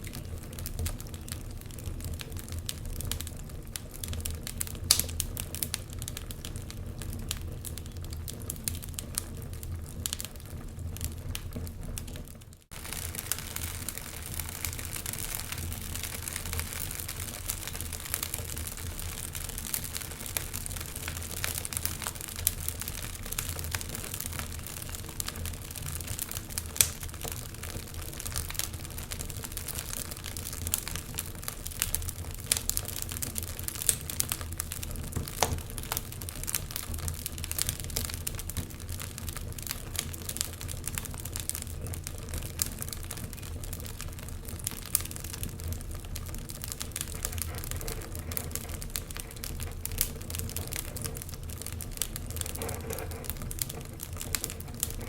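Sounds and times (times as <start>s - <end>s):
wood fire crackling and popping: 0.0s - 55.0s.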